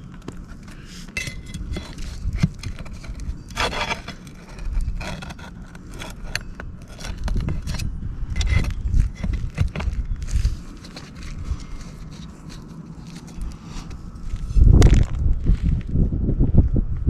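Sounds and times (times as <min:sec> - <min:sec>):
metal tool scraping roof shingles: 0:00.0 - 0:13.6.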